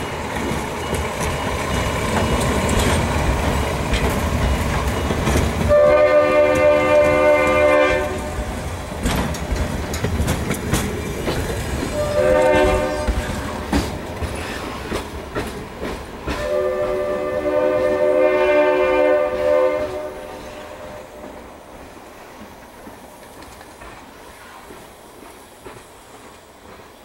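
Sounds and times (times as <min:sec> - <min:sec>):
diesel locomotive passing: 0:00.0 - 0:27.0
locomotive horn blast: 0:05.7 - 0:08.4, 0:12.0 - 0:13.2, 0:16.3 - 0:21.3.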